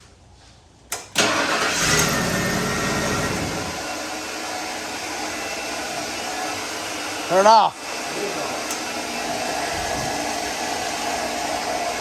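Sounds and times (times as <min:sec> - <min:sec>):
engine cranking and starting: 0:00.9 - 0:03.9
starter motor whirring: 0:01.2 - 0:03.9.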